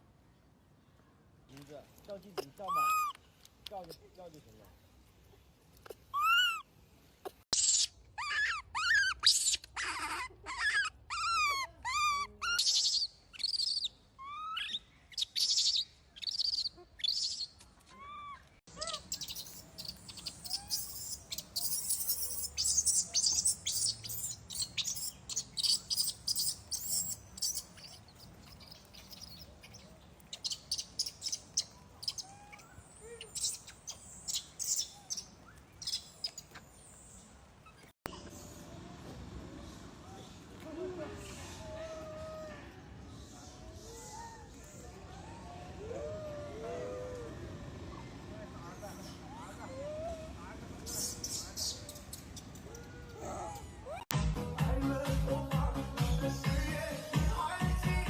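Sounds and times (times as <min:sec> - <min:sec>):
young monkey high-pitched cries: 0:02.6 - 0:03.2, 0:05.9 - 0:06.7, 0:07.6 - 0:36.5, 0:49.2 - 0:54.1.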